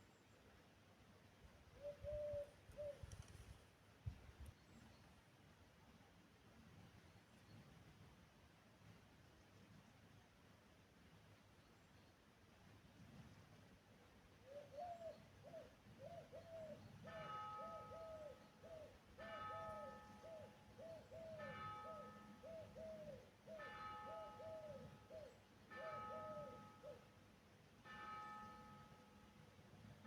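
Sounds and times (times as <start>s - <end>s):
bird hooting: 1.7s - 3.2s, 14.4s - 16.8s, 17.6s - 19.0s, 19.6s - 27.1s.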